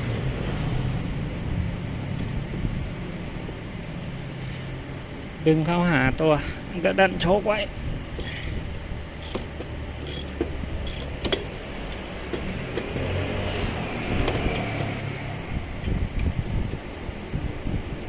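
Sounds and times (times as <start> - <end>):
metallic clicks of hand tools: 2.2 - 2.5, 9.2 - 13.0.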